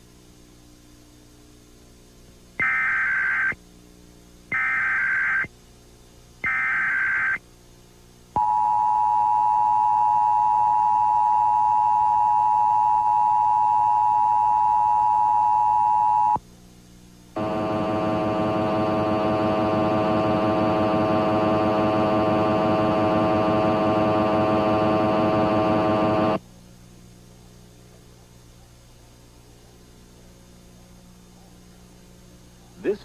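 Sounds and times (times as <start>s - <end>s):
faint low hum: 0.0s - 33.0s
loud steady two-tone signal: 2.6s - 3.6s, 4.5s - 5.5s, 6.4s - 7.4s, 8.4s - 16.4s, 17.4s - 26.4s.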